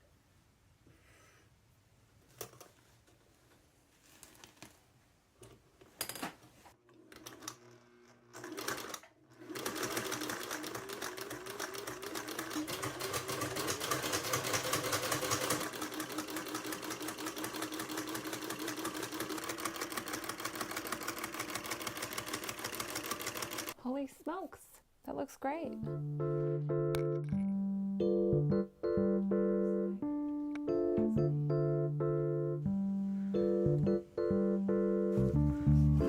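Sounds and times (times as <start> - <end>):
sewing machine stitching clatter: 8.3 - 23.8.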